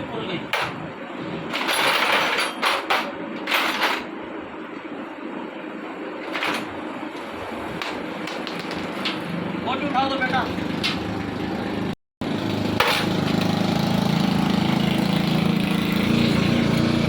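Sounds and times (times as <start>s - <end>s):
steady background noise: 0.0s - 17.0s
metal tools clattering and scraping: 1.5s - 4.1s.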